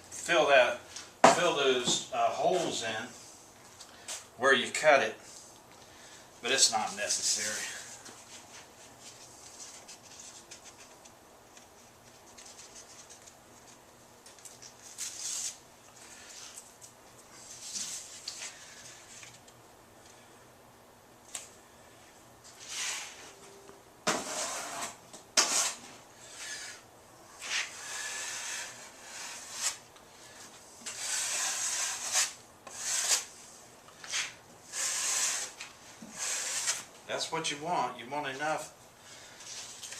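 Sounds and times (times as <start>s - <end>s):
drywall knife scraping: 22.6s - 23.4s, 24.1s - 26.8s, 27.4s - 33.4s, 34.0s - 36.9s.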